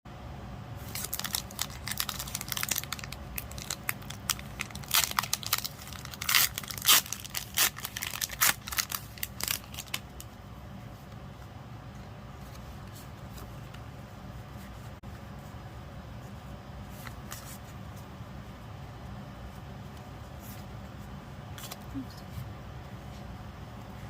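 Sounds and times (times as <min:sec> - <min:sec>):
foil wrapper crinkling and tearing: 0:00.8 - 0:10.3.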